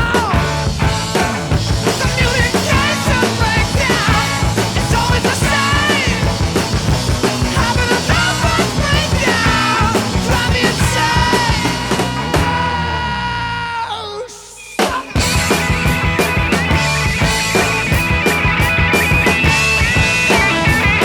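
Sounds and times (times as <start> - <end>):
person singing: 0.0 - 0.6, 1.9 - 6.4, 7.4 - 15.3
loud rock music: 0.0 - 21.0.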